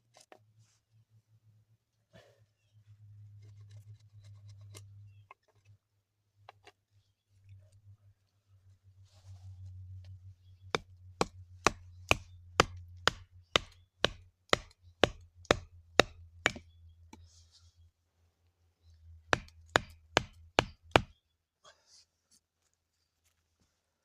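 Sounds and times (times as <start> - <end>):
low steady hum: 7.0 - 21.2
sharp chopping strikes: 10.8 - 16.6, 19.3 - 21.1.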